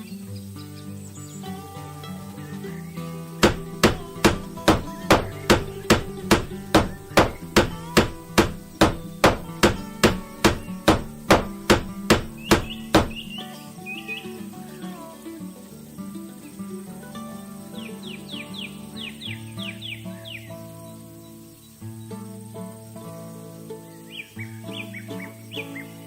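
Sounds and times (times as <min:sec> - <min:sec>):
background music: 0:00.0 - 0:21.6
hammer strikes: 0:03.4 - 0:13.3.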